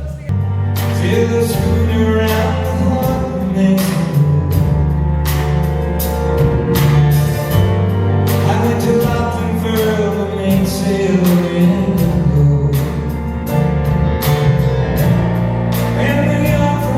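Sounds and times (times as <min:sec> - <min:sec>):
live band playing: 0:00.0 - 0:16.9.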